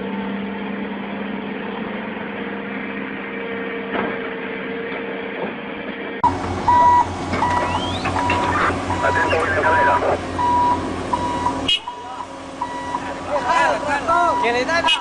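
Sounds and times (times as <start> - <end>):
heavy machine engine running: 0.0 - 15.0
reversing alarm beeping: 6.7 - 15.0.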